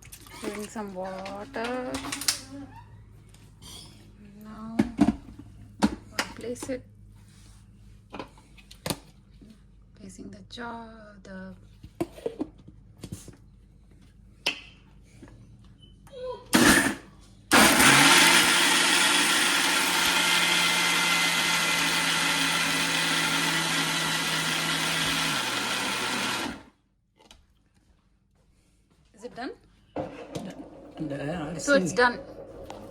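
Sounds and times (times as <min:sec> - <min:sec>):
mixer grinder motor running: 0:16.6 - 0:26.7.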